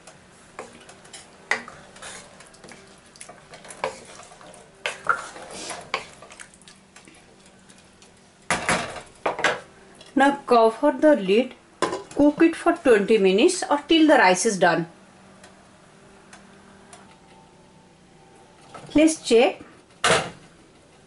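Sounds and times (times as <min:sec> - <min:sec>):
spoon stirring rice in pot: 0:00.6 - 0:08.2.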